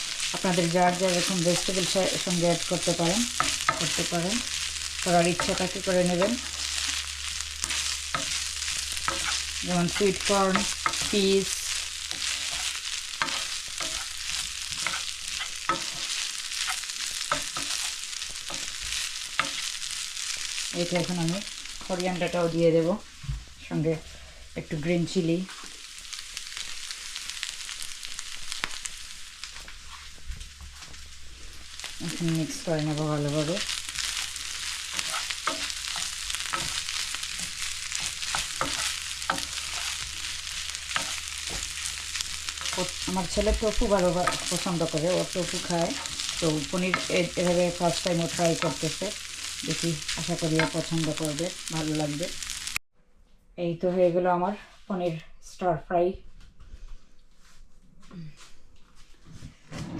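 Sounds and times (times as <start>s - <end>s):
spatula scraping a pan: 0.0s - 20.7s, 33.3s - 50.9s
rice sizzling in a pan: 0.0s - 52.8s.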